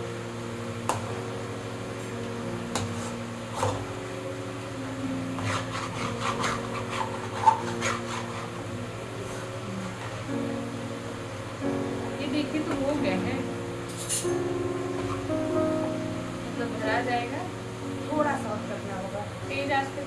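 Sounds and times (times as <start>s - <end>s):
soft background music: 0.0s - 20.0s
spatula scraping a pan: 2.8s - 3.9s, 5.3s - 9.5s.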